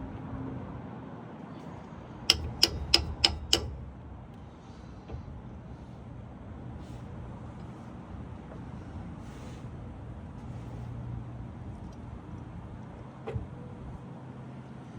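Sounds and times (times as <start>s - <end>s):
metal-on-metal taps: 2.3s - 3.9s.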